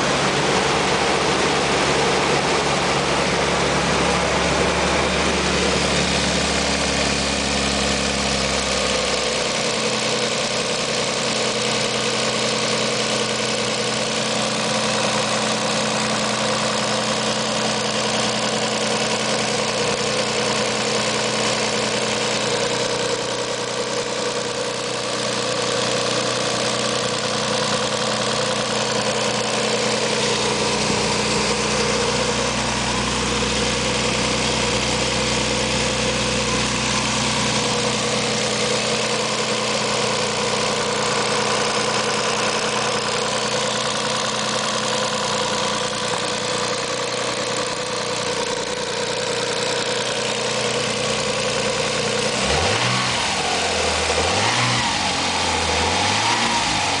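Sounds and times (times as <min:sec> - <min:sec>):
engine revving: 0:00.0 - 0:09.4, 0:24.4 - 0:48.6, 0:49.5 - 0:57.0
car engine idling: 0:00.0 - 0:57.0
loud engine clicking: 0:00.0 - 0:57.0.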